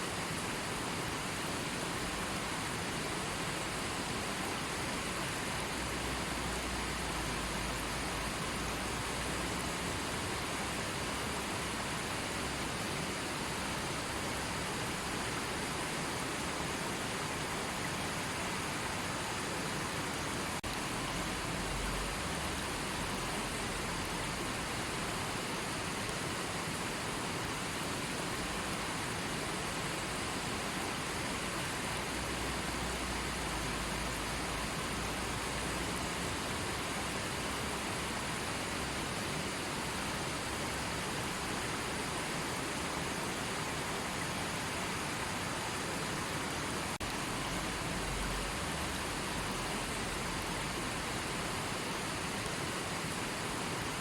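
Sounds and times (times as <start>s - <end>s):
river water rushing: 0.0s - 54.0s.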